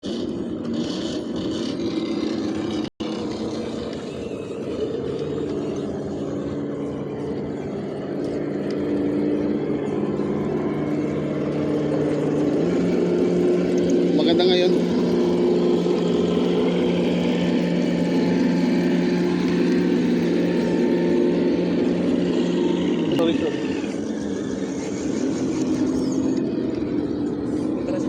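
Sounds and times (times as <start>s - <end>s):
electric motor and gearbox whining: 0.0s - 28.0s.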